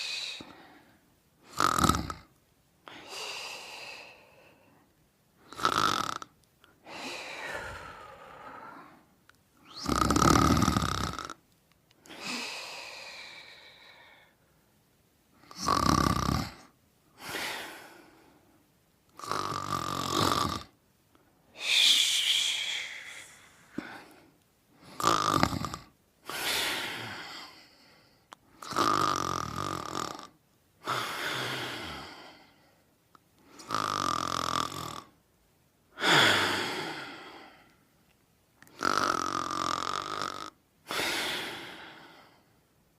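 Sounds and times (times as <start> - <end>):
person snoring: 0.0 - 2.3, 5.4 - 11.4, 12.1 - 14.4, 15.4 - 18.3, 19.2 - 20.8, 21.5 - 27.8, 28.6 - 32.6, 33.5 - 35.2, 36.0 - 37.8, 38.6 - 42.5.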